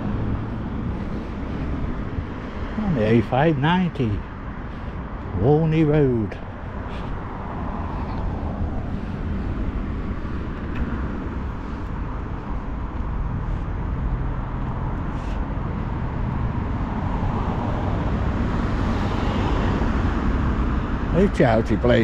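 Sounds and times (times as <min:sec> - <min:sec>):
rumble of passing cars: 0:00.0 - 0:22.0.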